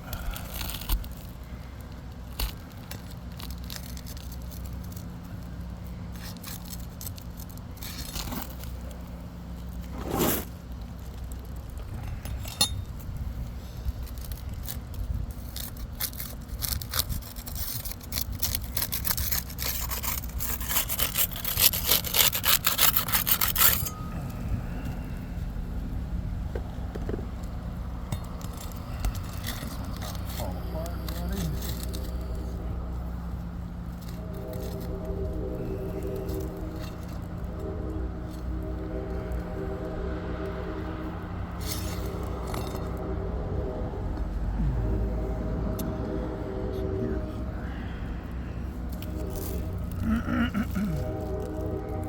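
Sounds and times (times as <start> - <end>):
steady low hum: 0.0 - 52.0
scraping on hard surface: 2.4 - 13.0, 14.0 - 25.4, 26.6 - 52.0
rapid rasping strokes: 13.9 - 24.9, 27.6 - 52.0.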